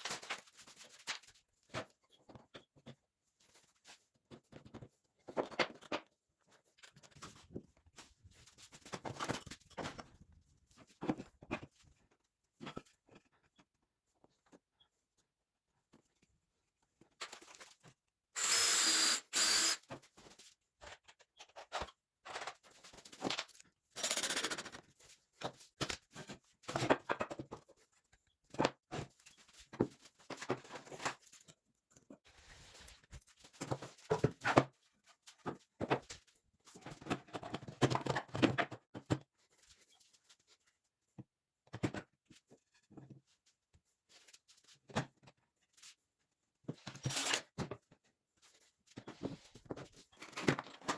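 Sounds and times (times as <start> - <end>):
power tool whining: 18.4 - 19.8.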